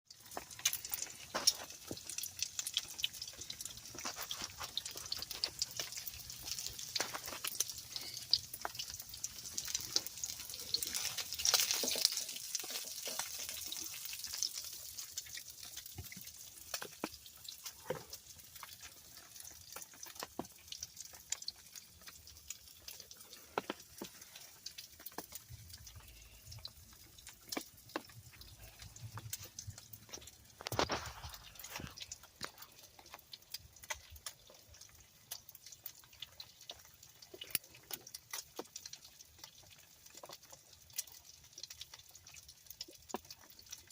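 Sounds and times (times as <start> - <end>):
rain hissing: 0.2 - 35.0.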